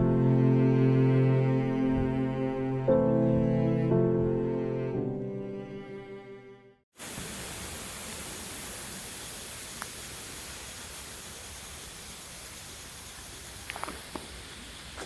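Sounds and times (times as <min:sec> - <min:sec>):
cello music: 0:00.0 - 0:06.8.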